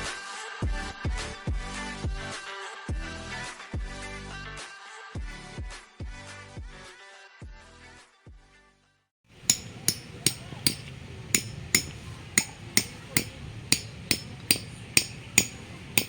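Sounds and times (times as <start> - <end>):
hammer striking metal: 9.3 - 16.0.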